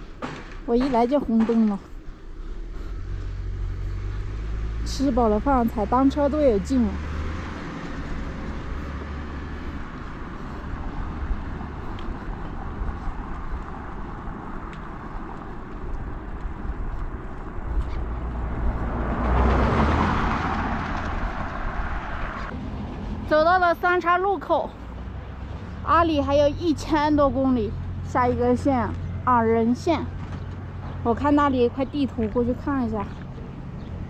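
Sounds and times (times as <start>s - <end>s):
bicycle road noise: 0.0s - 34.0s
vehicle passing: 0.8s - 34.0s
wind on microphone: 7.0s - 22.6s.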